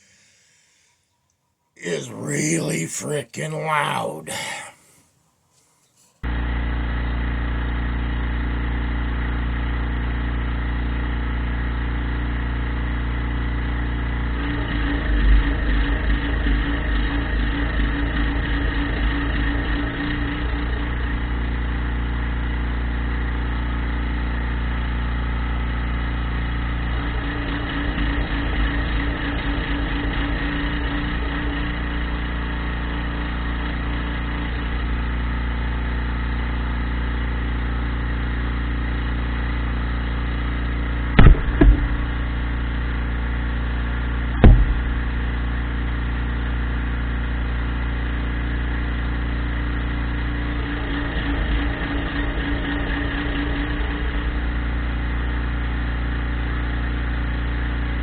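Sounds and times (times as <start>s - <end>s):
sharp knocks: 41.2s - 42.1s, 44.4s - 45.0s.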